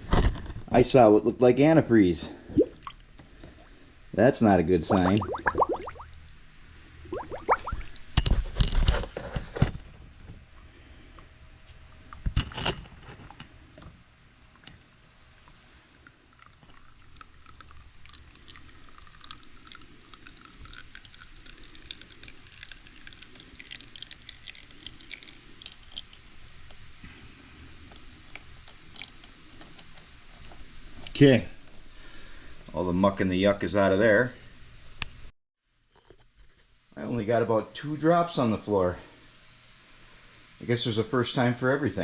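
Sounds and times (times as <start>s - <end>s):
oil trickling into drain pan: 4.9s - 6.4s, 16.0s - 31.2s.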